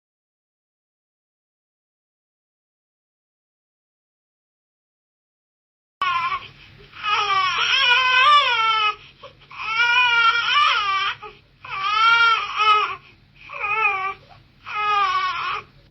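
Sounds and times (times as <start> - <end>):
infant crying: 6.0 - 15.8.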